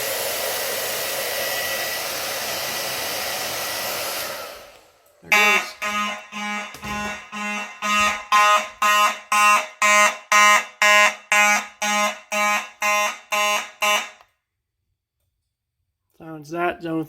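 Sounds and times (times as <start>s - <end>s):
fire alarm horn pulsing: 5.2s - 14.5s.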